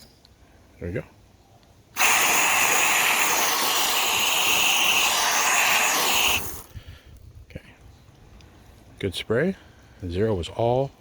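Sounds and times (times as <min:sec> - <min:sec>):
hose sprayer hissing water: 0:02.0 - 0:06.7.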